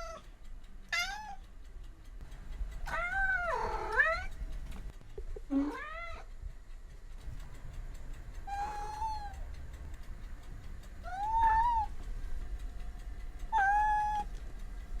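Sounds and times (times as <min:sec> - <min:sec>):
cat meowing: 0:00.9 - 0:01.4, 0:02.9 - 0:04.3, 0:05.5 - 0:06.3, 0:08.5 - 0:09.4, 0:11.0 - 0:12.0, 0:13.5 - 0:14.3.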